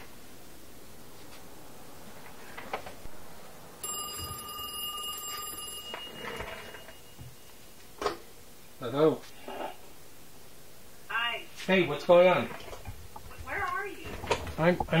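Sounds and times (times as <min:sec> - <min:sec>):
telephone bell ringing: 0:03.8 - 0:07.8.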